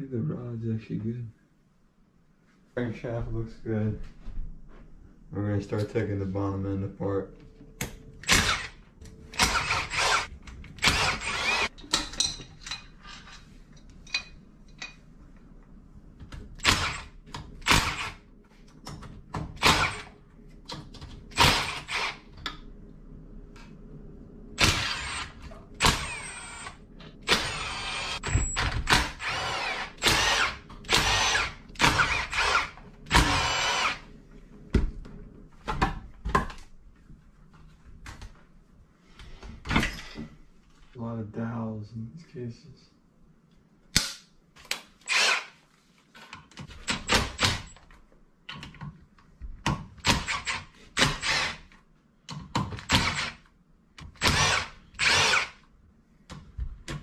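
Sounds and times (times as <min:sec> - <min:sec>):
clinks of tools and parts: 0:11.8 - 0:15.1
power driver motor whining: 0:24.6 - 0:34.0.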